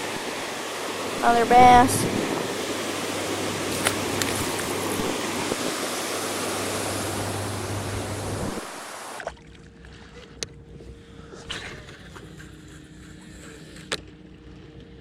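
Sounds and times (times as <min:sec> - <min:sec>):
rushing river water: 0:00.0 - 0:09.4.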